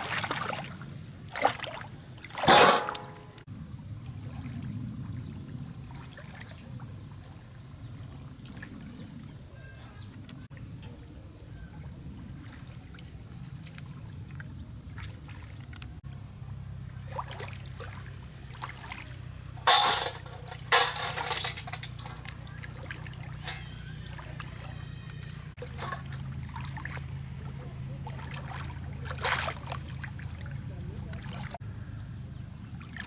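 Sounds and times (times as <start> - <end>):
water splashing and sloshing: 0.0 - 9.4, 11.8 - 31.6, 32.4 - 33.0
loud splashes: 1.4 - 3.4, 25.5 - 30.5.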